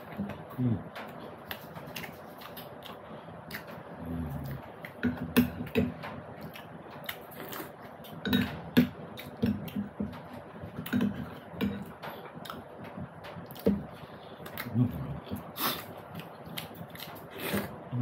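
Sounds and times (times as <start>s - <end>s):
chewing and mouth noises: 1.2s - 5.0s, 14.4s - 17.8s
dishes clinking: 8.1s - 12.2s.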